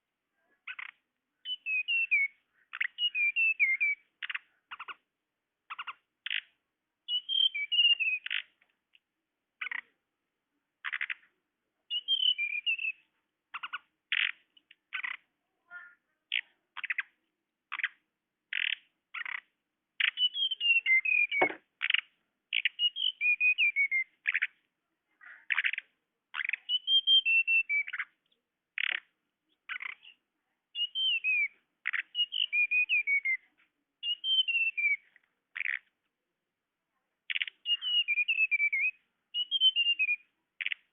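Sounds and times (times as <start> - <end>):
bird chips and twittering: 0.7 - 5.0, 5.7 - 6.5, 7.1 - 8.6, 11.9 - 24.6, 25.2 - 28.2, 28.8 - 30.2, 30.8 - 33.4, 34.0 - 35.9, 37.3 - 40.9.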